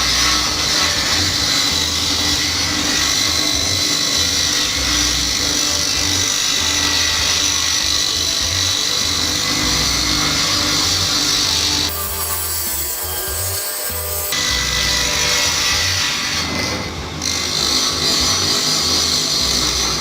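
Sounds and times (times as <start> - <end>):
table saw whining: 0.0 - 20.0.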